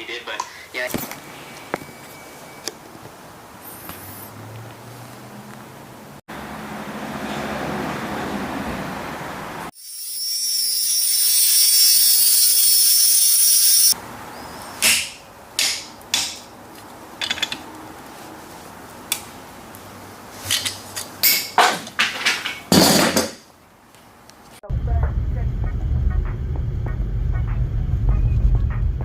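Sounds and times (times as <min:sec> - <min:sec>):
shop tool hissing: 0:09.8 - 0:14.0.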